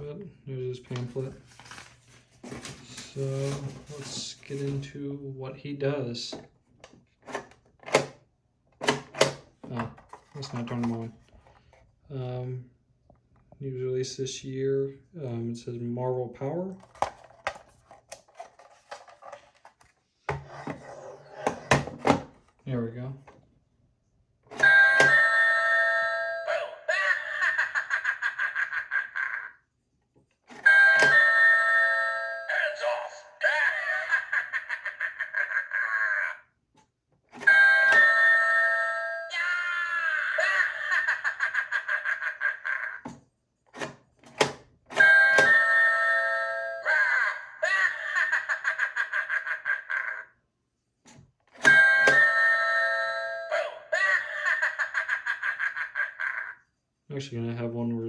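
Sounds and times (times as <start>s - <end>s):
recorded pulsing laugh: 26.0s - 29.6s, 32.3s - 36.4s, 38.8s - 43.1s, 46.3s - 50.3s, 52.6s - 56.7s.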